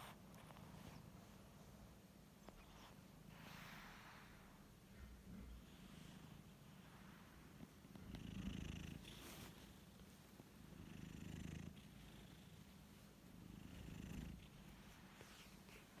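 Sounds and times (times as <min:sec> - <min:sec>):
cat snoring: 0:08.0 - 0:09.5, 0:10.8 - 0:12.7, 0:13.4 - 0:15.0.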